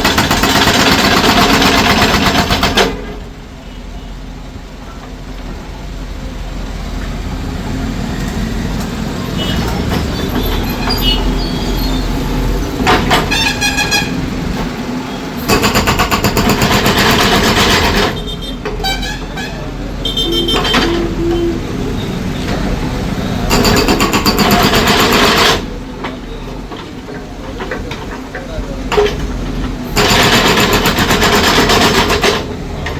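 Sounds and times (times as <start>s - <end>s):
concrete breaker hammering: 0.0s - 3.2s, 15.4s - 18.2s, 23.5s - 25.8s, 29.8s - 32.6s
engine rumble: 0.0s - 30.1s.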